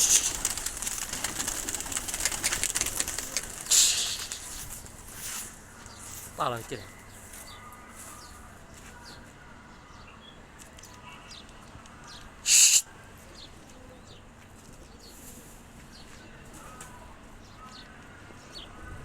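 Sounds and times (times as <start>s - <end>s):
pigeon wings flapping: 0.0s - 4.9s.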